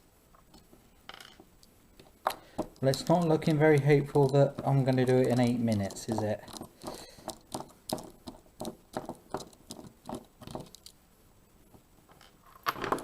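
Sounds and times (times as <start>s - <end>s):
lock and tools clicking: 1.6s - 8.1s, 9.0s - 11.0s, 12.2s - 13.0s.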